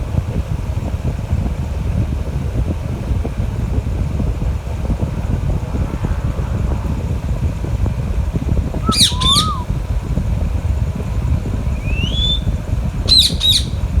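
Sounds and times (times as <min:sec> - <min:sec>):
low rumble: 0:02.0 - 0:13.0
parakeet squawks: 0:08.8 - 0:09.6, 0:13.1 - 0:13.9
parakeet rising whistle: 0:08.8 - 0:09.7, 0:11.8 - 0:13.8.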